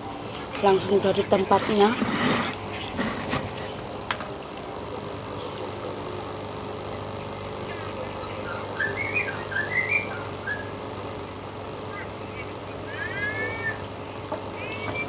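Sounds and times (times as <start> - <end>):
low background hum: 0.0 - 15.0
bird chirps and calls: 7.7 - 10.8, 11.9 - 13.9.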